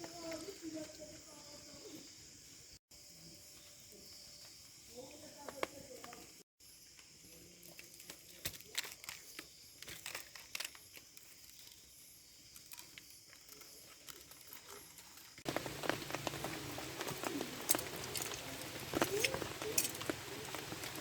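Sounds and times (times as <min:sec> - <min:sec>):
raindrops pattering: 0:12.7 - 0:21.0.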